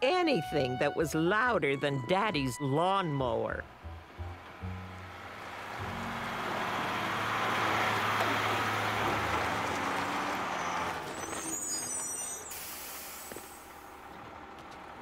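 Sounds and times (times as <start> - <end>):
truck engine rumble: 0.0 - 15.0
high brake squeal: 10.4 - 13.7.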